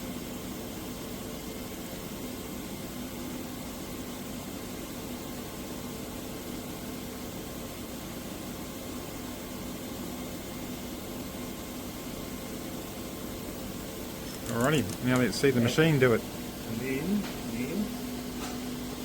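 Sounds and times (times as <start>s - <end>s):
workshop machinery humming: 13.2s - 19.0s.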